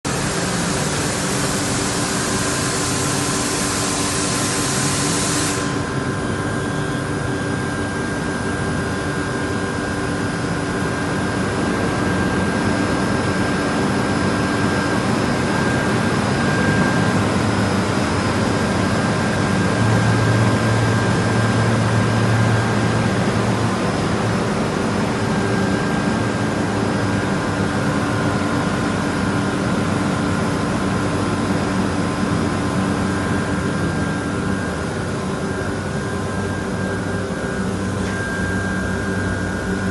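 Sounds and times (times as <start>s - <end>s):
air compressors humming and whining: 0.0s - 39.9s
hiss: 0.2s - 5.9s.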